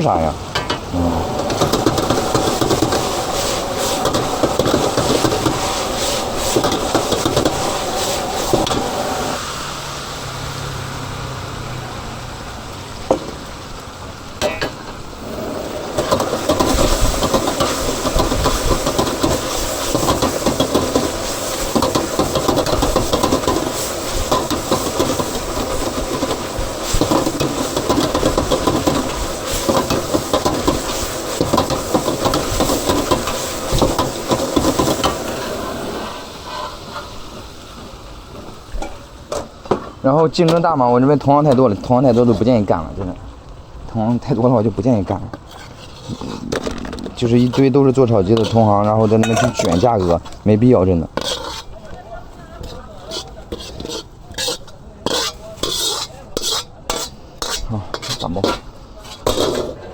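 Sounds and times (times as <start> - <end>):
food sizzling in a wok: 0.0 - 43.8, 45.5 - 59.7
metal tools scraping a pan: 45.3 - 50.4, 51.1 - 51.9, 52.6 - 59.8.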